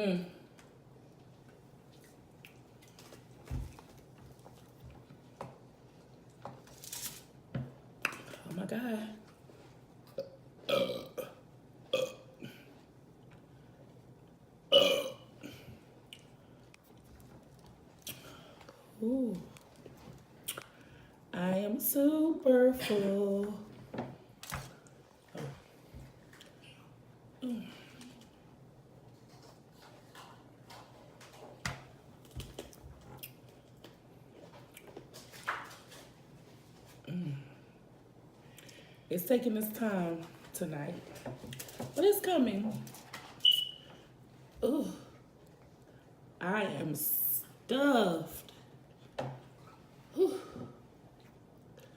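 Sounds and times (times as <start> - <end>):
woman burping: 10.2 - 12.7, 14.7 - 15.7.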